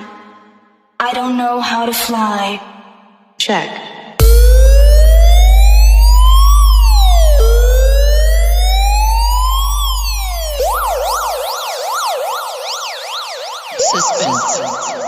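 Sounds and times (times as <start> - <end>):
deep bass drone: 4.2 - 11.4
electronic police siren: 4.2 - 15.0.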